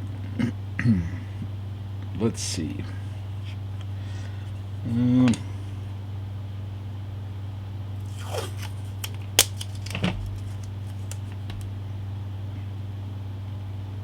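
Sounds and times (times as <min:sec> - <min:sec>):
steady low hum: 0:00.0 - 0:14.0
handling rustle: 0:08.0 - 0:11.8
sharp handling clicks: 0:08.6 - 0:11.8.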